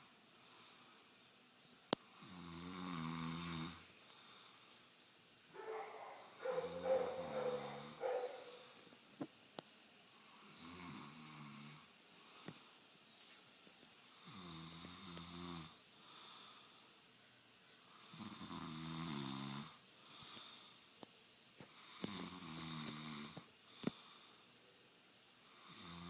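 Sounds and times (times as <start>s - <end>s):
man snoring: 2.1s - 3.8s, 6.2s - 8.7s, 14.3s - 15.8s, 18.0s - 19.8s, 21.9s - 23.4s, 25.6s - 26.0s
soft breaths: 3.3s - 9.3s, 11.8s - 18.2s, 19.7s - 25.7s.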